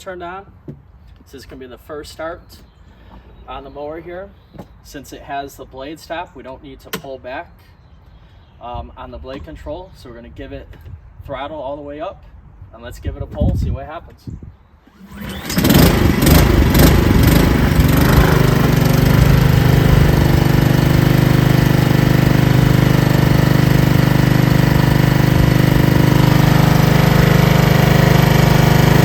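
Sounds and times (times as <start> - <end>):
lawn mower engine running: 14.9 - 29.0.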